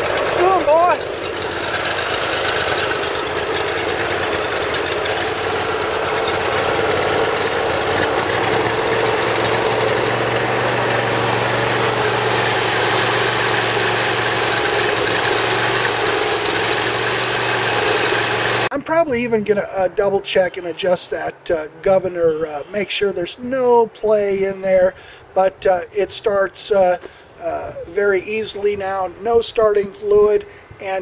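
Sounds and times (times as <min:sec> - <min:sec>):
lawn mower engine running: 0:00.0 - 0:20.0.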